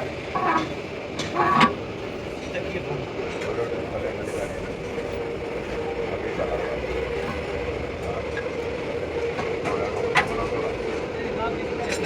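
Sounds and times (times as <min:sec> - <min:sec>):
machine hum: 0:00.0 - 0:02.4.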